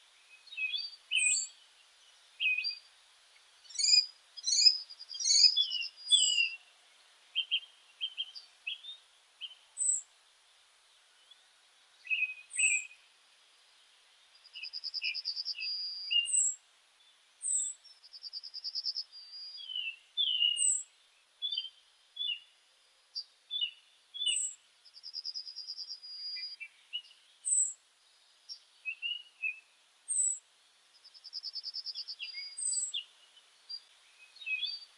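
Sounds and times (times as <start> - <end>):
birds chirping: 3.6 - 10.0, 23.2 - 34.9
bird trill: 3.7 - 6.6.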